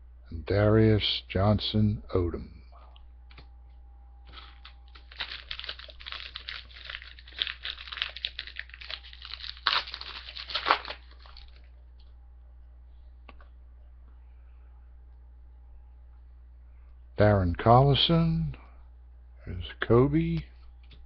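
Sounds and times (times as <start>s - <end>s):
foil wrapper crinkling and tearing: 4.3s - 11.7s.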